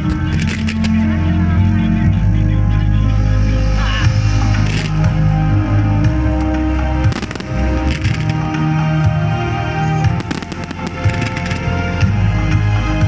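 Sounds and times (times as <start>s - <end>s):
fireworks going off: 0.0s - 1.0s, 3.7s - 5.2s, 7.0s - 8.5s, 10.1s - 12.1s
loud music: 0.0s - 13.0s.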